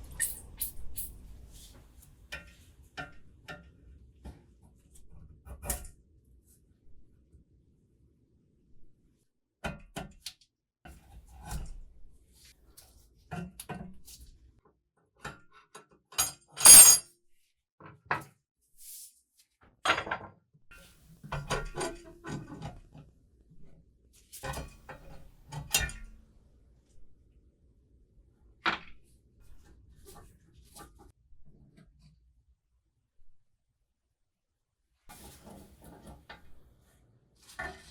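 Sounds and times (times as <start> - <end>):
metal parts clicking and clanking: 16.2 - 17.0.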